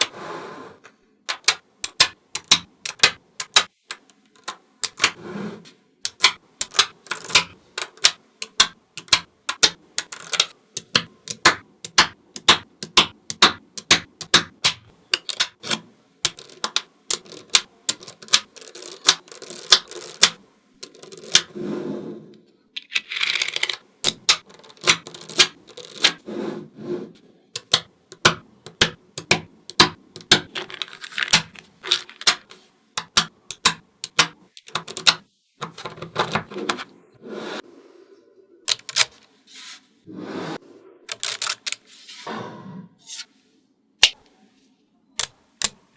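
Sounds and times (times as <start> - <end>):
magnetic balls rattling and scraping: 0.0 - 12.6, 13.4 - 22.2, 22.8 - 37.6, 40.3 - 42.2
magnetic balls clicking: 1.3 - 5.2, 6.0 - 21.5, 22.8 - 26.2, 27.6 - 36.8.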